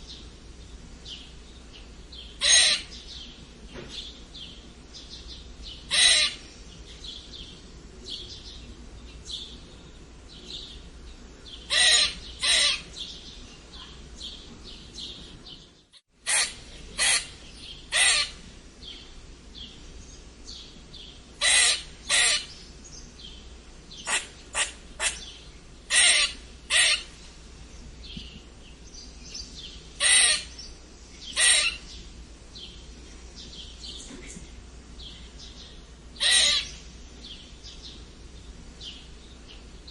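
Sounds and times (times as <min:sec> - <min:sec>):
squirrel squeaking: 0:02.4 - 0:02.9, 0:05.9 - 0:06.4, 0:11.7 - 0:12.9, 0:16.2 - 0:18.4, 0:21.4 - 0:22.5, 0:24.0 - 0:27.1, 0:30.0 - 0:30.6, 0:31.3 - 0:31.9, 0:36.2 - 0:36.8.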